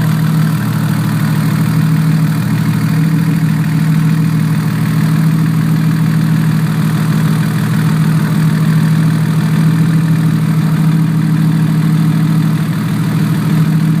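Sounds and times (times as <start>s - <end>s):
exhaust leak ticking: 0.0s - 14.0s
turbocharged engine idling: 0.0s - 14.0s.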